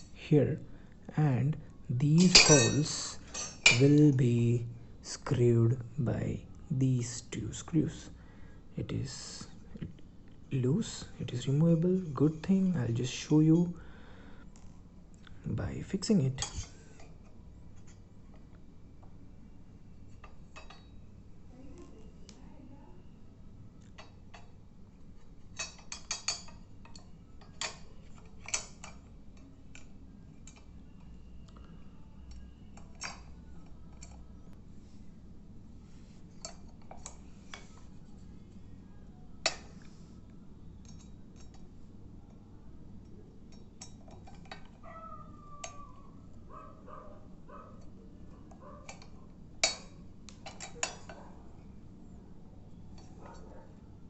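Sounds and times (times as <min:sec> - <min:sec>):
metal parts clicking and clinking: 0:02.2 - 0:04.0, 0:40.8 - 0:41.6.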